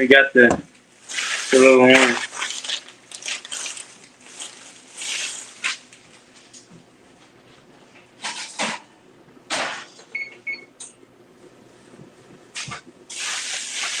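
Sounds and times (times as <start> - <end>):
appliance electronic beeps: 10.1 - 10.9.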